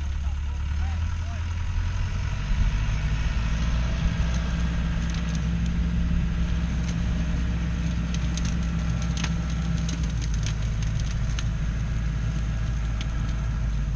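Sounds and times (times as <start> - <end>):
diesel engine droning: 0.0 - 13.9
sharp clicks and snaps: 3.6 - 5.8, 6.5 - 13.4.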